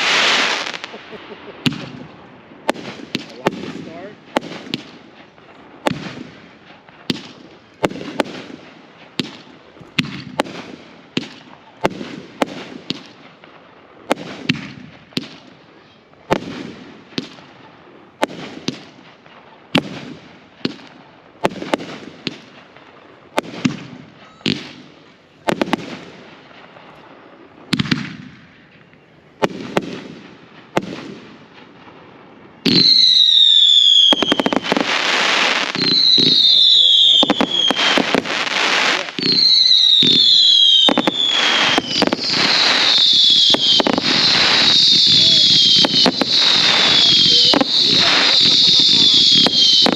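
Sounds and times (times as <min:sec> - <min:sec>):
firework booms: 0:00.0 - 0:15.6, 0:16.2 - 0:28.8, 0:29.4 - 0:49.9
firework whistles falling in pitch: 0:32.6 - 0:49.9.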